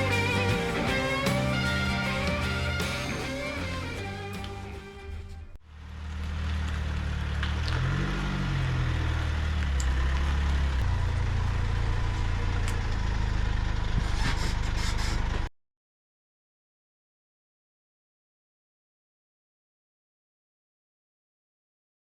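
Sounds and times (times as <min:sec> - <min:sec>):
vehicle engine running: 0:00.0 - 0:15.5.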